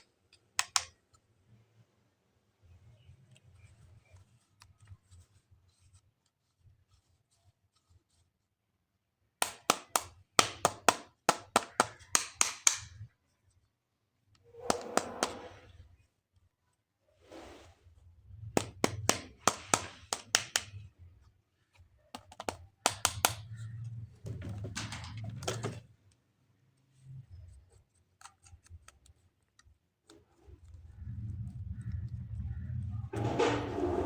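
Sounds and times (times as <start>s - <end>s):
plastic clicks and snaps: 0.0s - 1.2s, 22.1s - 23.6s.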